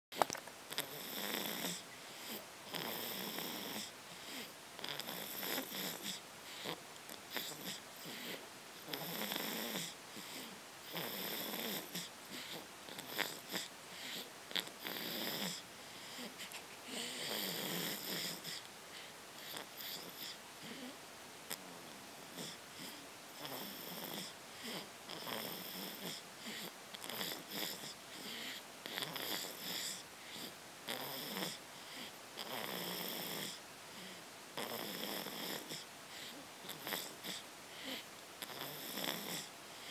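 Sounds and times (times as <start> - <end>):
person snoring: 0.7 - 18.6, 22.3 - 39.5.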